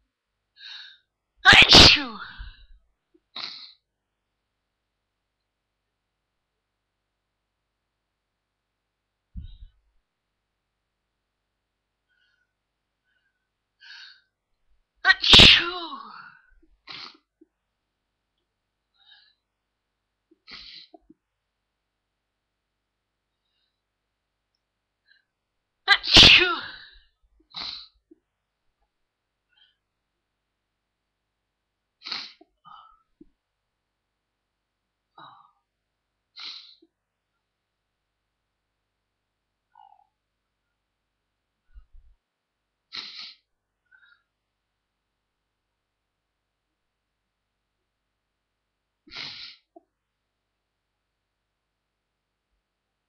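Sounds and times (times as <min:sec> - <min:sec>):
person breathing: 0:00.6 - 0:01.1, 0:12.1 - 0:14.3, 0:18.9 - 0:19.5
person sneezing: 0:01.5 - 0:02.7, 0:15.1 - 0:16.3, 0:25.9 - 0:27.0, 0:43.0 - 0:43.4, 0:49.1 - 0:49.7.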